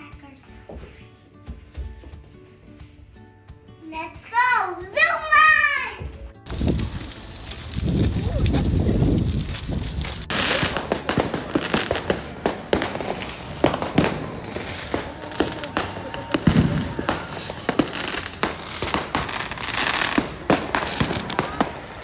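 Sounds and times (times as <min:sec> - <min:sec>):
firecrackers cracking: 0:06.5 - 0:22.0.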